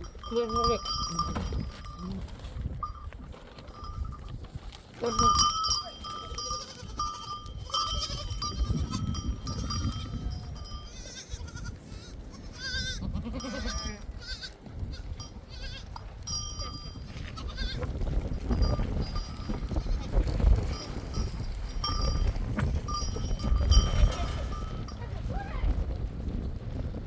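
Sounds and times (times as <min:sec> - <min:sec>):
sheep bells ringing: 0:00.0 - 0:25.2
strong wind rumble: 0:00.0 - 0:27.0
sheep bleating: 0:06.3 - 0:09.1, 0:09.9 - 0:16.0, 0:17.4 - 0:17.9.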